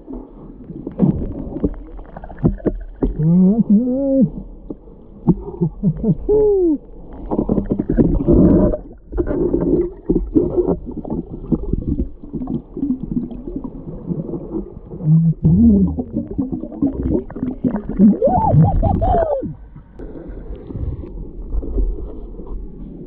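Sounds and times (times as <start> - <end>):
churning water underwater: 0.0 - 23.0
hoot-like tones: 18.2 - 19.6.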